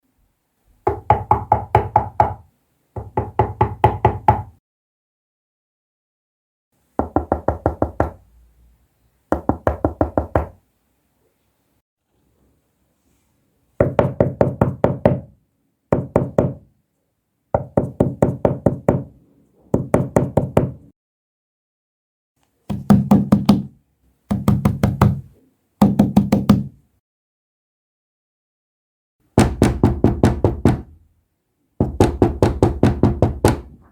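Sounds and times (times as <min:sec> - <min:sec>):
knocking on a door: 0:00.9 - 0:02.4, 0:03.0 - 0:04.6, 0:07.0 - 0:08.2, 0:09.3 - 0:10.6, 0:13.8 - 0:15.3, 0:15.9 - 0:16.6, 0:17.6 - 0:19.1, 0:19.7 - 0:20.8, 0:22.7 - 0:23.7, 0:24.3 - 0:25.2, 0:25.8 - 0:26.7, 0:29.4 - 0:31.0, 0:31.8 - 0:33.9.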